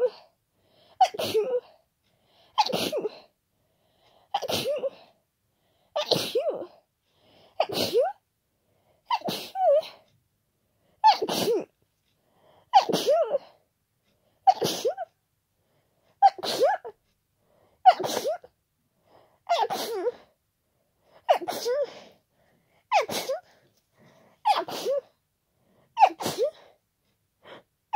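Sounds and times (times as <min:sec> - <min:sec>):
person sneezing: 0:01.0 - 0:01.6, 0:02.6 - 0:03.2, 0:06.0 - 0:06.7, 0:07.6 - 0:08.2, 0:09.1 - 0:10.0, 0:11.0 - 0:11.7, 0:12.7 - 0:13.4, 0:14.5 - 0:15.1, 0:16.2 - 0:16.9, 0:17.9 - 0:18.5, 0:19.5 - 0:20.2, 0:21.3 - 0:22.1, 0:22.9 - 0:23.5, 0:24.4 - 0:25.1, 0:26.0 - 0:26.7.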